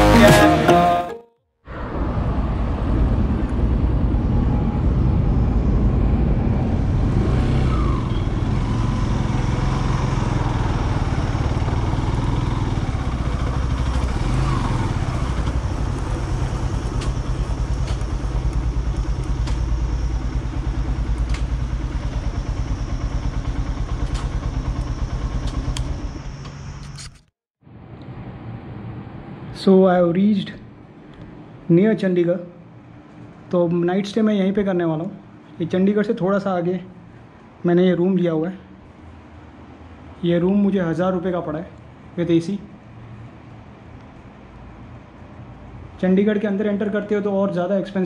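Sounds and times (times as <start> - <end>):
road noise: 0.0 - 48.0
motorcycle engine running: 6.7 - 26.9.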